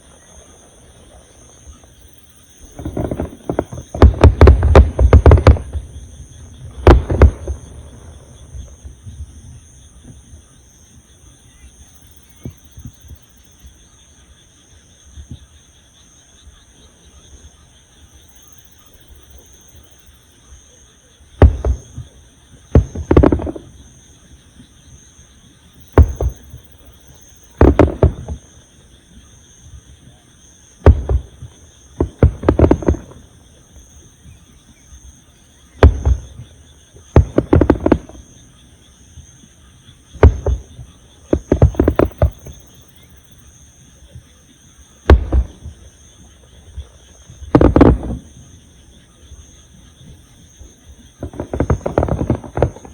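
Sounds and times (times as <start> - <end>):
firework shells booming: 2.6 - 10.2, 21.4 - 24.1, 25.8 - 28.6, 30.8 - 33.6, 35.7 - 38.5, 40.1 - 43.2, 45.0 - 48.6, 51.0 - 52.9.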